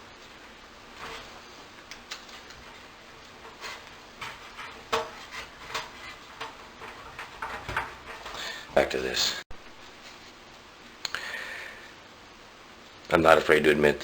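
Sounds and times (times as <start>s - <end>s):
hands tapping heater casing: 1.0s - 9.1s.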